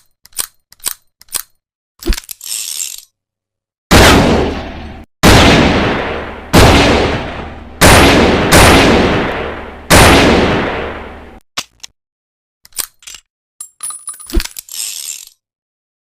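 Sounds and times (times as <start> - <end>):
revolver gunshots echoing: 3.9 - 11.4.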